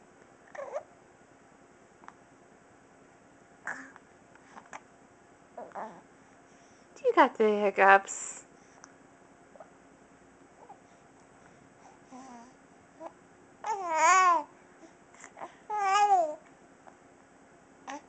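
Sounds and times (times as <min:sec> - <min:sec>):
baby cooing: 0:00.5 - 0:00.9, 0:03.6 - 0:04.0, 0:05.6 - 0:06.0, 0:12.1 - 0:14.5, 0:15.4 - 0:16.4
baby hiccups: 0:03.6 - 0:04.0.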